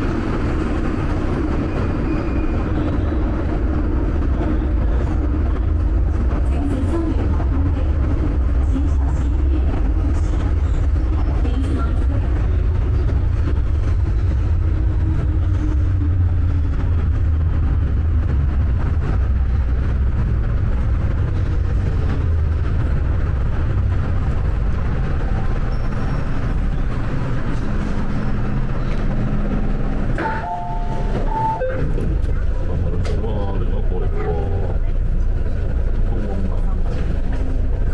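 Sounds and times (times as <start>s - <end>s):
metro train rumbling: 0.0s - 37.9s
two-pitch electronic beeping: 30.2s - 32.3s.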